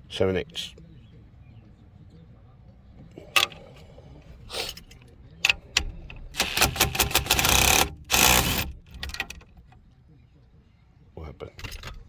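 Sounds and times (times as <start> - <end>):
socket ratchet clicking: 3.4 - 3.8, 4.7 - 9.5.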